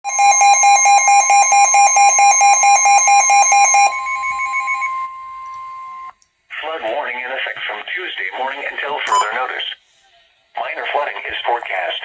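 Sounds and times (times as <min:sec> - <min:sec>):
rapidly pulsing alarm beep: 0:00.0 - 0:06.2
steady alert tone: 0:00.1 - 0:06.1.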